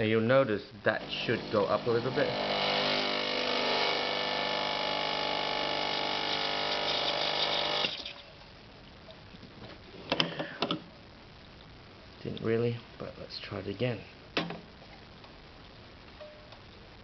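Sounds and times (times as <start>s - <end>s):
espresso machine pump buzzing: 1.0s - 8.2s.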